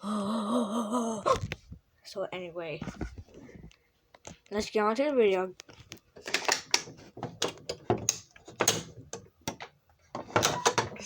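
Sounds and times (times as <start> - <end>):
plastic and metal clicks and knocks: 5.6 - 11.0.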